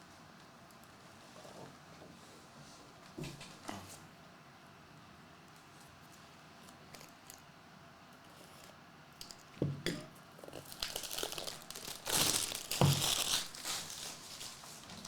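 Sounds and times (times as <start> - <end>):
wrapping crinkling as torn open: 10.4 - 15.0.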